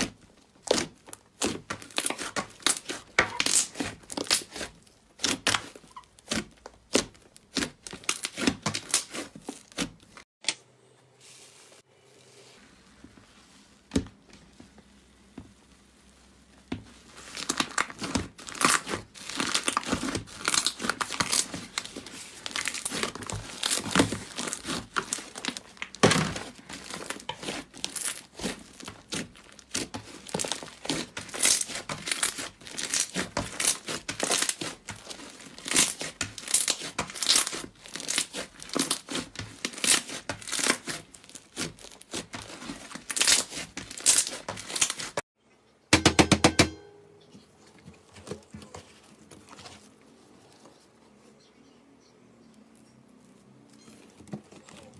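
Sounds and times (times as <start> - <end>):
slime squished crackling: 0.0 - 10.2, 16.9 - 45.2.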